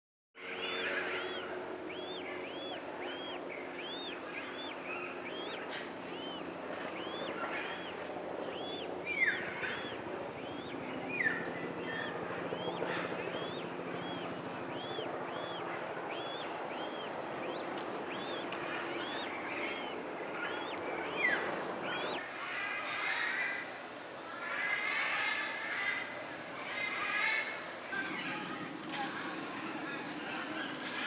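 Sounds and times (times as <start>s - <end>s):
steady low hum: 0.4s - 22.5s
bird chirping: 0.5s - 22.2s.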